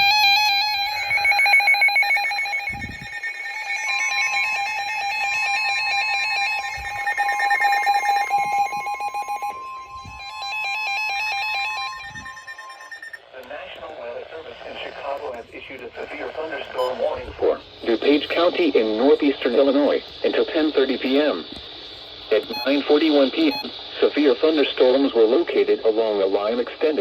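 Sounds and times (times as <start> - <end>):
steady warning alert tone: 0.1 - 13.3, 22.5 - 23.7
warbling and pulsing alert beeps: 6.4 - 13.2.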